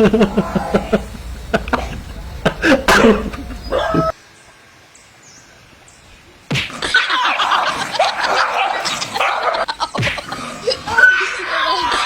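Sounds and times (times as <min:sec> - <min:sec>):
people laughing: 0:00.0 - 0:04.1, 0:06.8 - 0:12.0.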